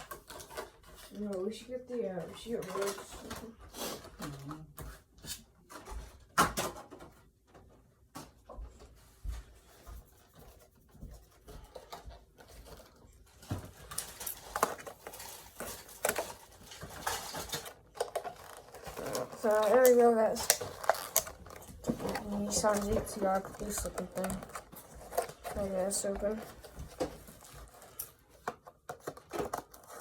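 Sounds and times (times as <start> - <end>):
handling rustles: 9.3 - 30.0.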